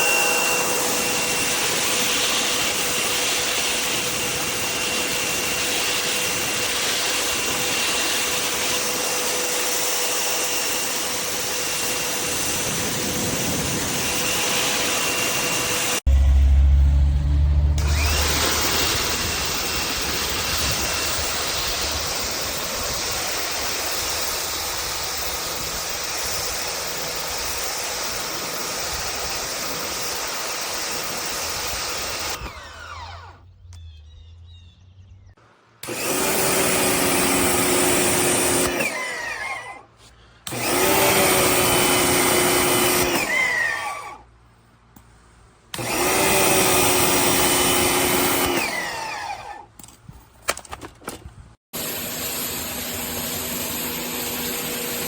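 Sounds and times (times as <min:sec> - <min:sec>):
pressure washer spraying: 0:17.8 - 0:32.4.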